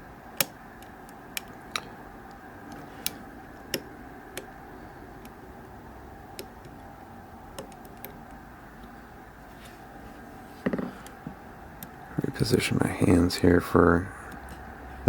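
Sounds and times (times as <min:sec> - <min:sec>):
faint steady hum: 0:00.0 - 0:15.0
lock pick metallic clicks: 0:07.6 - 0:08.3.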